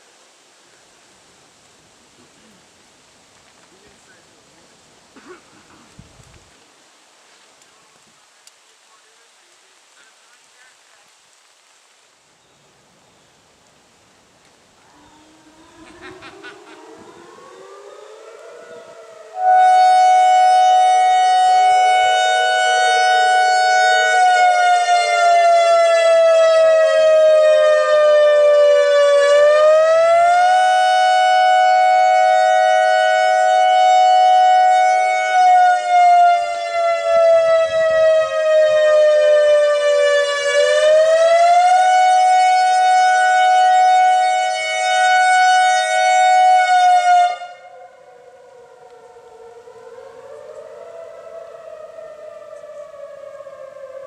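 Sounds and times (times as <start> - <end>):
loud harsh siren tone: 14.8 - 54.0.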